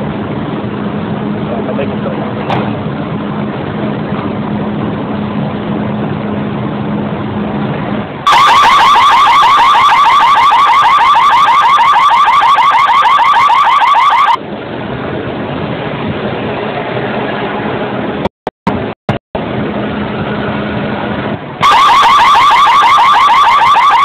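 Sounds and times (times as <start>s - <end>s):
car alarm chirping: 8.3s - 14.4s, 21.6s - 24.0s.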